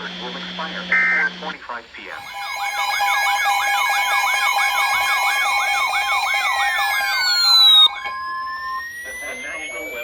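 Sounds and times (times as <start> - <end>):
siren-like sweep: 2.2 - 10.0
steady alert tones: 2.2 - 10.0
tone gliding downward: 2.2 - 10.0.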